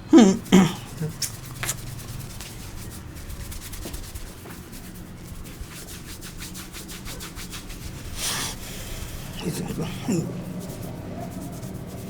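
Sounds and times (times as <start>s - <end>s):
hands rubbing through hair: 0.0s - 12.0s.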